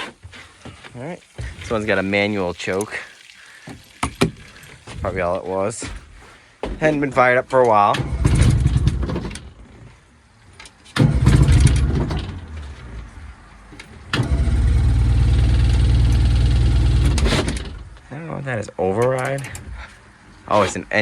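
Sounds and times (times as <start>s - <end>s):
outboard motor starting and running: 11.0s - 12.5s, 14.1s - 17.7s.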